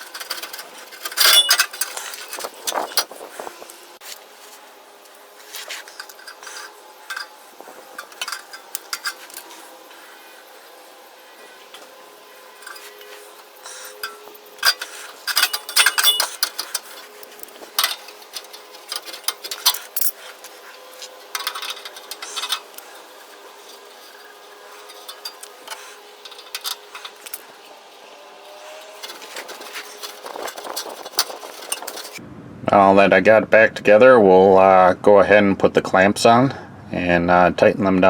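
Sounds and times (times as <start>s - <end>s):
metal pipes clinking and scraping: 0.0s - 4.2s, 5.1s - 10.1s, 11.4s - 27.8s, 28.4s - 32.2s
faint steady hum: 0.0s - 38.0s.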